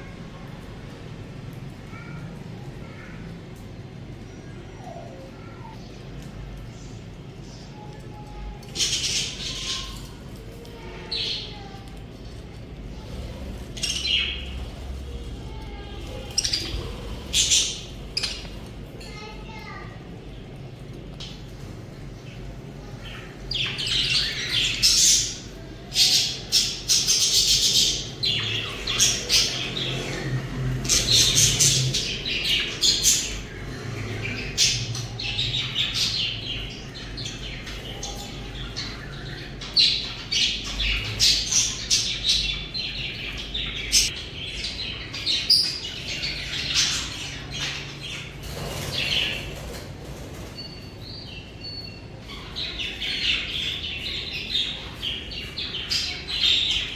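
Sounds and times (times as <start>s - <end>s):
budgerigars chirping and chattering: 8.2s - 56.9s.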